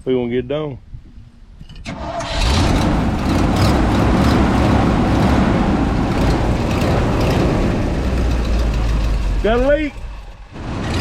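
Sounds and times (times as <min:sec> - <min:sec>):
loud engine running: 0:02.3 - 0:11.0.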